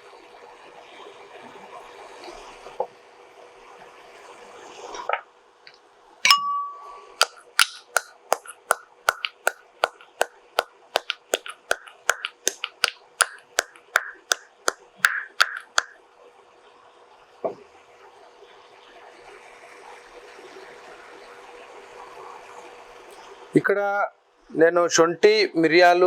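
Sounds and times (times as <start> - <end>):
metal clink: 6.3 - 9.4
pestle pounding in metal mortar: 6.3 - 10.3, 11.0 - 15.9.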